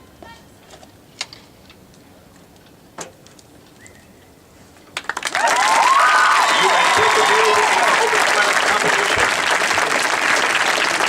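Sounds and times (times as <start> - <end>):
whistles: 3.8 - 4.3
crowd applauding: 5.0 - 11.0
crowd cheering: 5.1 - 11.0.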